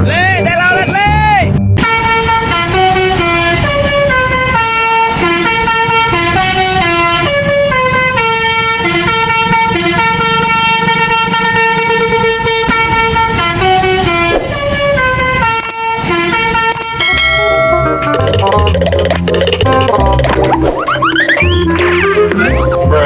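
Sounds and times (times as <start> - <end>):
bus air horn playing a tune: 1.8 - 18.1.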